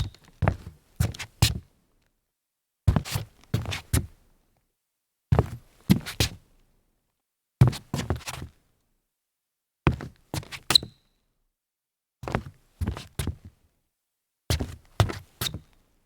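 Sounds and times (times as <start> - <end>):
rubber sneaker squeak: 0.0 - 0.3, 10.6 - 11.2, 15.4 - 15.7.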